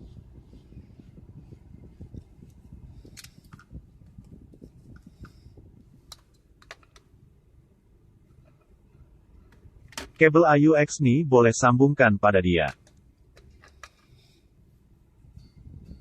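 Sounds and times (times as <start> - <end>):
low rumble: 0.0 - 6.0.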